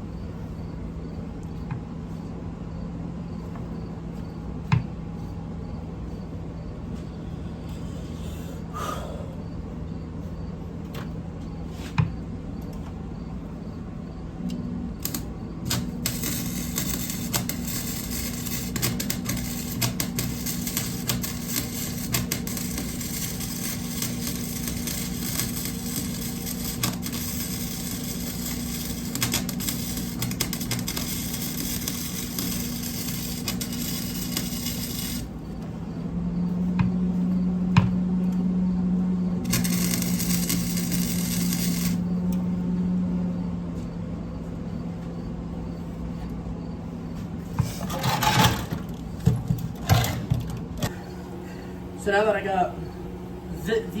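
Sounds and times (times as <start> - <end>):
low hum: 13.5 - 45.8
arc welder crackling and popping: 14.4 - 35.7, 39.3 - 42.4, 47.6 - 51.0.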